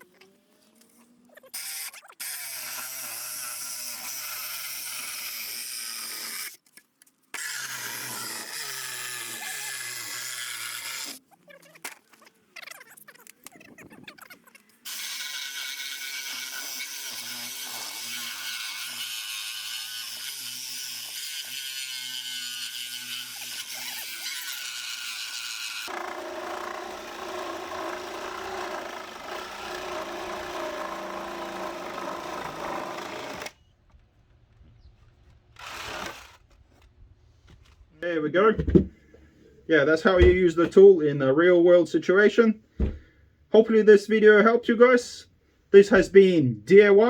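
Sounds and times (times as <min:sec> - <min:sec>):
reciprocating saw cutting: 0:07.4 - 0:11.2, 0:14.8 - 0:33.6, 0:35.6 - 0:36.5.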